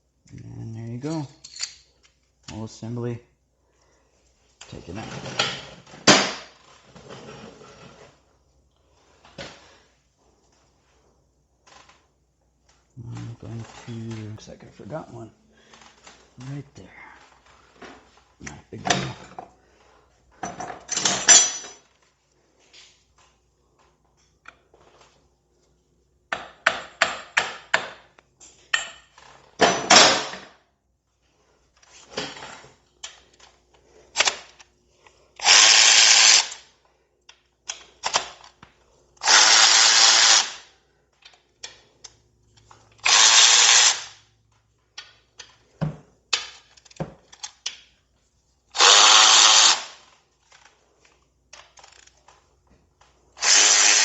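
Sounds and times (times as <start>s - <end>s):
hand tools clicking and clanking: 1.0s - 1.8s
power drill running: 35.4s - 36.6s, 39.2s - 40.7s, 43.0s - 44.2s, 48.7s - 50.0s, 53.4s - 54.0s.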